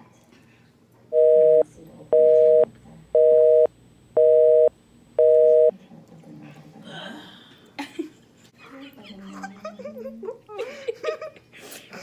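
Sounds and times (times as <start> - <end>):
telephone busy signal beeps: 1.2 - 5.7.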